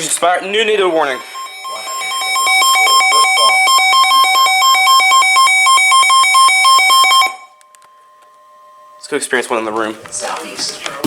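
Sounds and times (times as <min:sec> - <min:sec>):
electronic alert tone trilling: 0:00.9 - 0:07.6.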